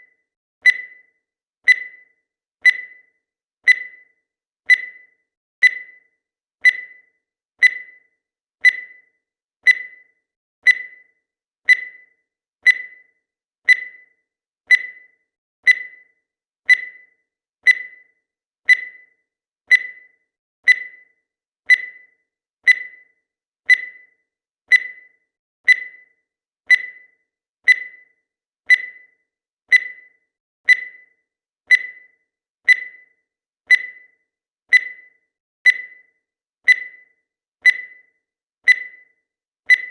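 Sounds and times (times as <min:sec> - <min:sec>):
high beep-like timer ticks: 0:00.0 - 0:39.9.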